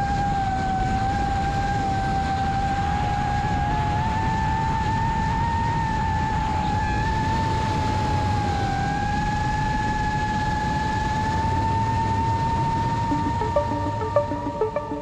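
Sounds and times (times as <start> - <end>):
wind rumbling on microphone: 0.0 - 14.3
drone propeller whine: 9.2 - 15.0.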